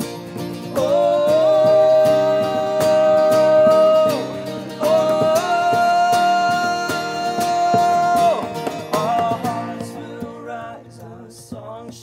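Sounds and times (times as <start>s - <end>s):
strummed acoustic guitar: 0.0s - 12.0s
man singing long notes: 0.6s - 12.0s.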